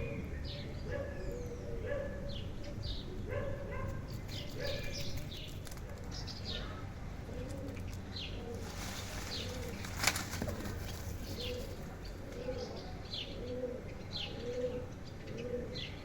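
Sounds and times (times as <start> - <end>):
birds chirping: 0.0 - 16.0
birds cooing: 0.0 - 16.0.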